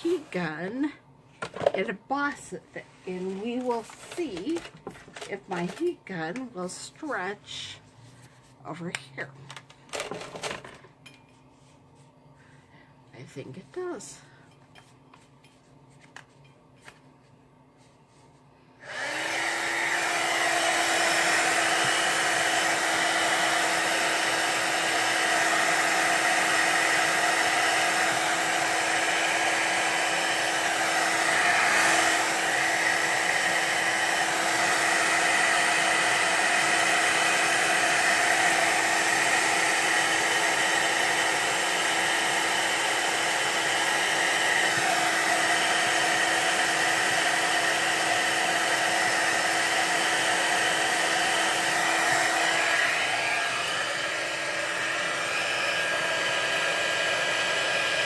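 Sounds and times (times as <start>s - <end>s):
heat gun blowing air: 18.8s - 58.0s.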